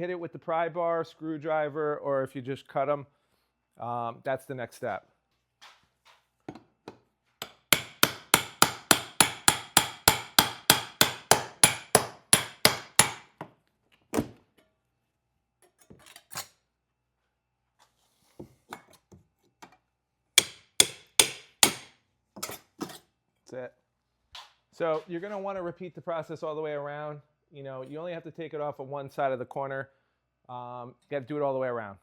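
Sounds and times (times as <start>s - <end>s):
hammer striking steel pry tool: 7.4s - 13.5s, 20.4s - 23.0s.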